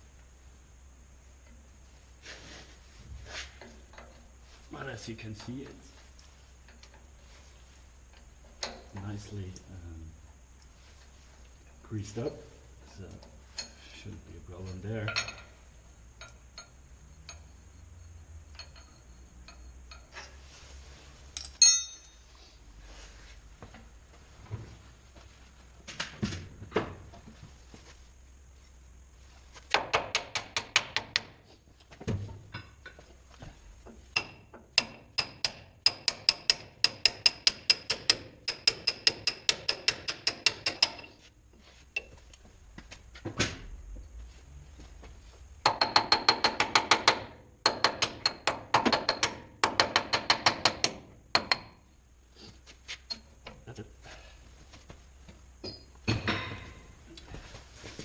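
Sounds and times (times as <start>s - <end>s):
ringing metal-on-metal clink: 15.0s - 15.5s, 16.2s - 20.2s, 21.4s - 22.3s
light metallic clicks of tools: 16.2s - 17.6s, 18.5s - 20.4s.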